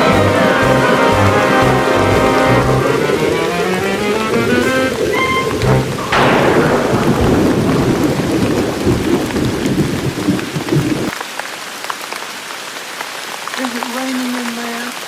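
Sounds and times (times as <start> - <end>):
music: 0.0 - 6.2
thunderclap: 0.0 - 11.1
steady rain: 0.0 - 15.0
rumbling thunder: 2.9 - 11.1.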